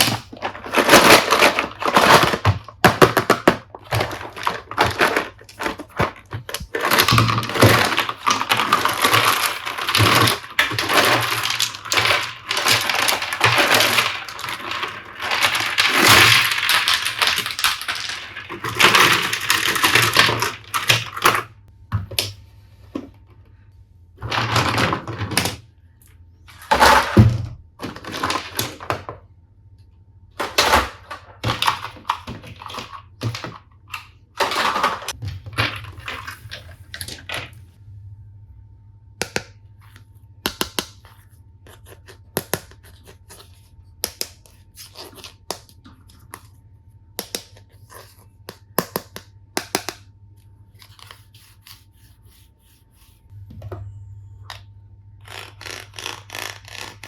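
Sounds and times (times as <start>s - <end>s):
packaging rustling and crinkling: 0.0s - 20.9s.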